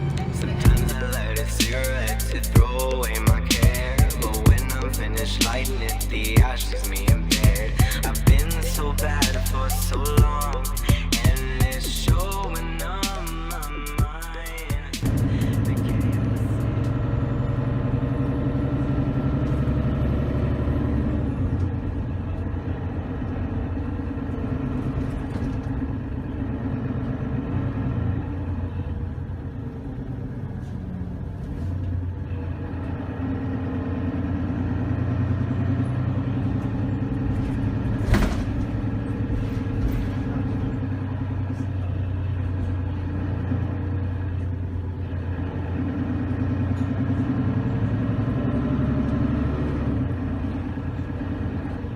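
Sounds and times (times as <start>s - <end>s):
bus diesel engine under load: 0.0s - 51.9s.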